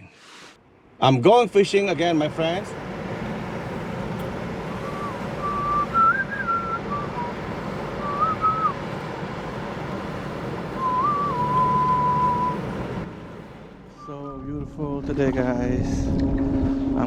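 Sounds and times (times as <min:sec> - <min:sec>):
rushing background noise: 0:01.7 - 0:16.3
person whistling a tune: 0:04.8 - 0:08.9, 0:10.8 - 0:12.8, 0:13.9 - 0:14.8.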